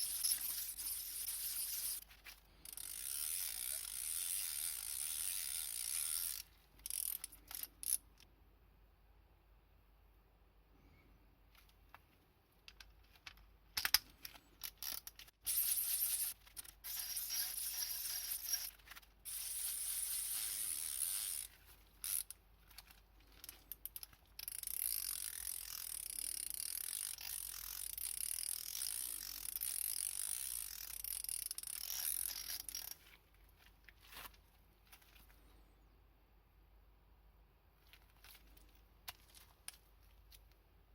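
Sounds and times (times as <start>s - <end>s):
ratchet clicking: 0.0s - 2.0s, 2.6s - 8.0s, 13.3s - 33.0s.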